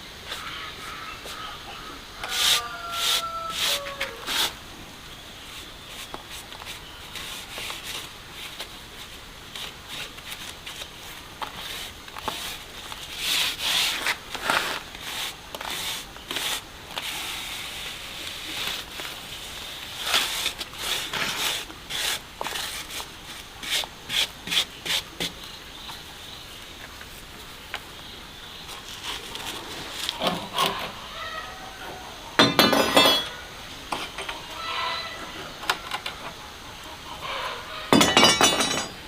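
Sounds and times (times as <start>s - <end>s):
trowel scraping mortar on wall: 11.5s - 17.9s, 20.0s - 25.3s.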